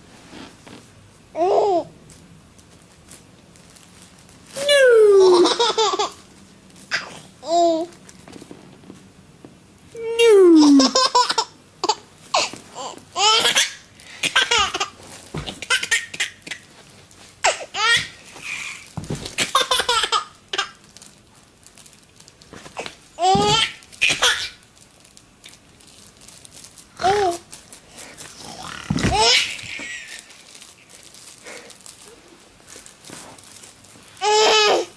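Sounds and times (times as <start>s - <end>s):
baby laughing: 4.6s - 6.2s, 10.6s - 15.0s, 19.4s - 20.7s, 23.2s - 24.6s, 28.7s - 30.3s.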